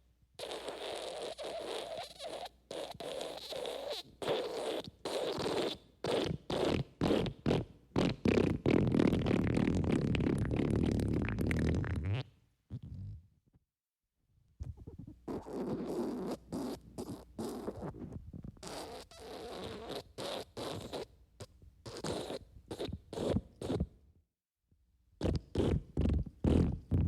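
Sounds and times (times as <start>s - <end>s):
wet farts: 0.4s - 13.2s, 14.6s - 21.1s, 25.2s - 27.0s.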